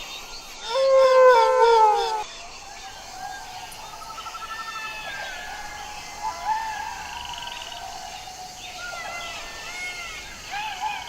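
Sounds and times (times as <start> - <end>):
jackals howling and yipping: 0.6 - 2.3.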